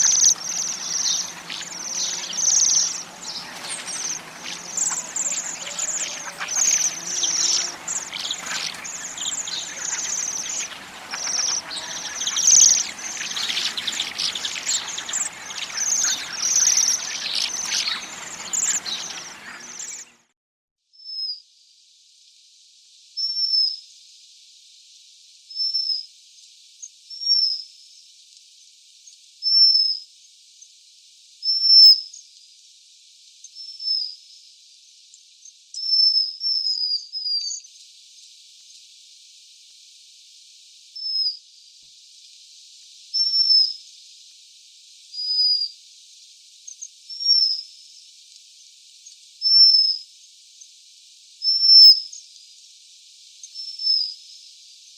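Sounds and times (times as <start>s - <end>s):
single high bird calls: 0.0s - 20.2s
waxwings trilling calls: 0.0s - 20.2s.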